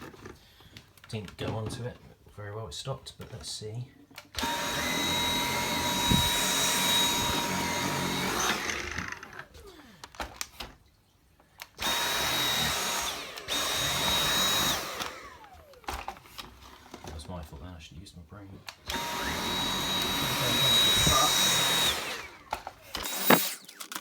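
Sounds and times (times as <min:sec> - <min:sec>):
vacuum cleaner motor whine: 0:04.4 - 0:09.5, 0:11.8 - 0:17.1, 0:18.7 - 0:24.0.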